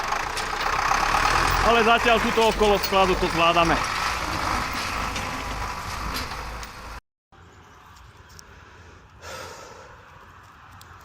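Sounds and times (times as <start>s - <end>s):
heavy engine rumbling: 0.0s - 7.0s.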